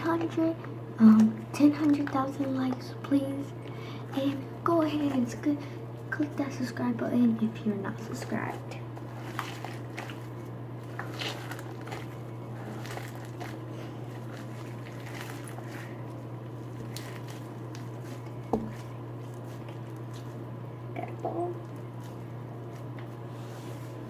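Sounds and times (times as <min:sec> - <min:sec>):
steady low hum: 0:00.0 - 0:24.0
slime squelching: 0:01.1 - 0:06.9, 0:07.5 - 0:24.0.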